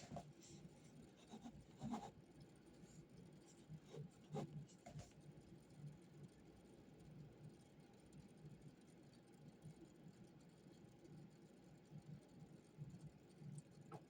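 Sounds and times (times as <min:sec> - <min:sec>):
quiet room hum: 0:00.0 - 0:14.0
pencil writing on paper: 0:01.2 - 0:02.2.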